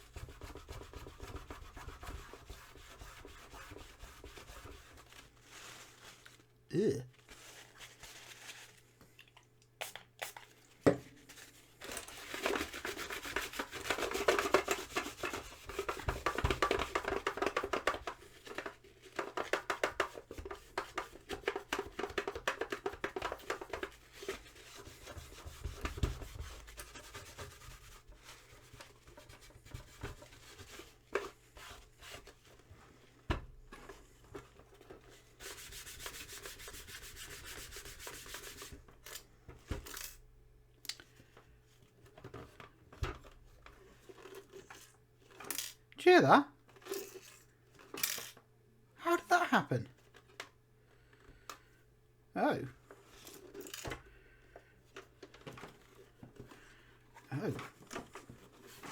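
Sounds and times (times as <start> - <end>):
hands rubbing plastic casing: 11.3 - 32.6.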